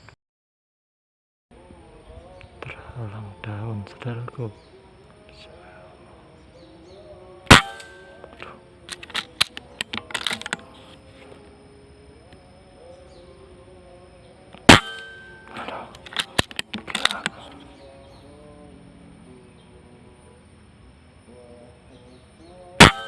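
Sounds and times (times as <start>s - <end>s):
hunting gun shots: 7.5s - 10.7s, 14.6s - 17.6s, 22.8s - 23.0s.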